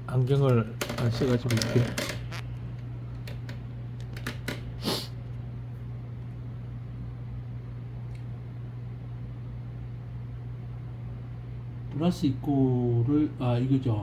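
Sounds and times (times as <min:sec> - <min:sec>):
steady low hum: 0:00.0 - 0:14.0
short hiss: 0:04.8 - 0:05.1.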